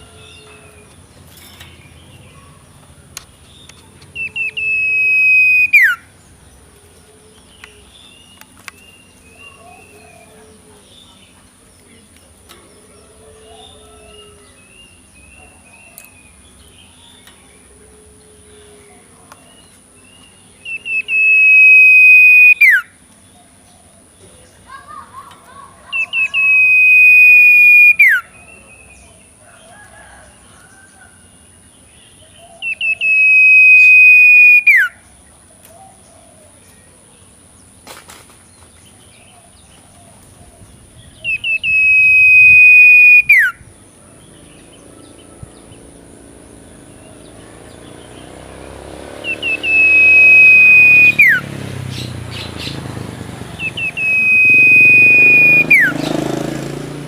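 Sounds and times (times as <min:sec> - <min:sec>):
owlet calling: 0:04.1 - 0:06.2, 0:20.6 - 0:22.9, 0:25.9 - 0:28.5, 0:32.4 - 0:35.0, 0:41.1 - 0:43.7, 0:49.2 - 0:51.5, 0:53.6 - 0:56.2.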